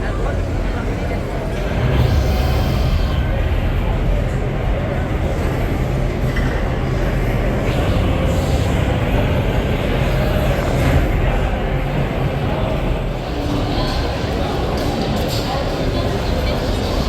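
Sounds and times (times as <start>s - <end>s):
roller coaster rumbling on track: 0.0s - 17.0s.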